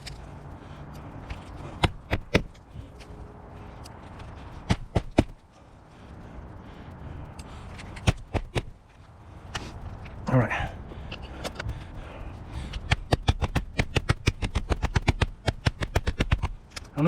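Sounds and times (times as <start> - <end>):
hammer driving nails into shingle: 1.8 - 2.5, 4.7 - 5.4, 8.0 - 8.7, 12.8 - 16.6.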